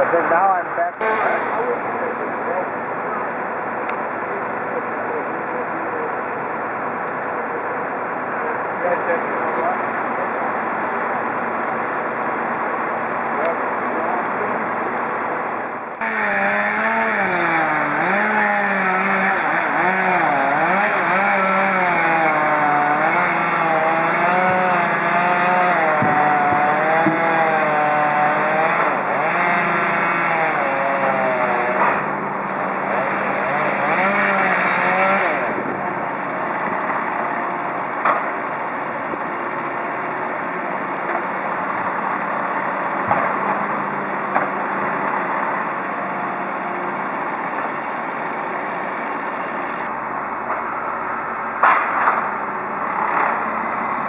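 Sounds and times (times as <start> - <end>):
chainsaw running: 1.0 - 2.0, 16.0 - 49.9.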